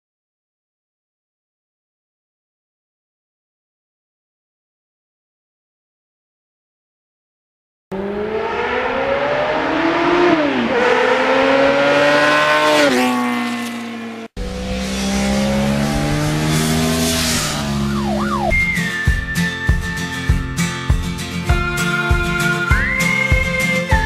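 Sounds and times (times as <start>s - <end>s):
engine accelerating hard: 7.9s - 18.7s.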